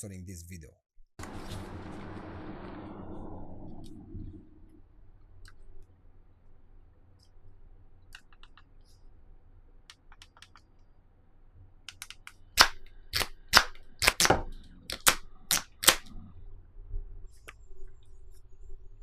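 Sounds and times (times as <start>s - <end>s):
loud sharp snapping clicks: 11.9s - 16.1s.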